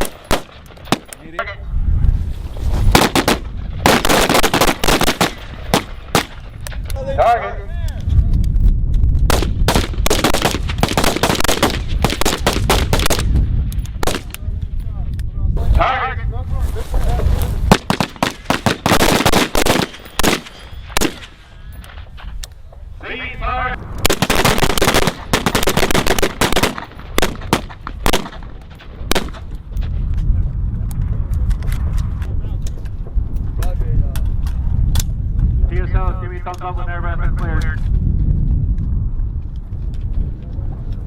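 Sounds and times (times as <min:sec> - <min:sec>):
rifle shots: 0:00.0 - 0:01.3, 0:02.9 - 0:06.5, 0:09.3 - 0:13.4, 0:14.0 - 0:14.4, 0:17.7 - 0:21.5, 0:24.0 - 0:29.5
rapid gunshots: 0:02.9 - 0:06.4, 0:09.3 - 0:13.4, 0:17.7 - 0:21.4, 0:24.0 - 0:28.5.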